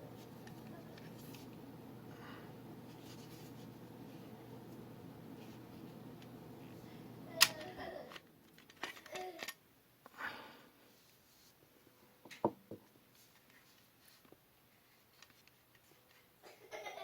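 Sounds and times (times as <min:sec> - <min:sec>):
low steady hum: 0:00.0 - 0:12.2.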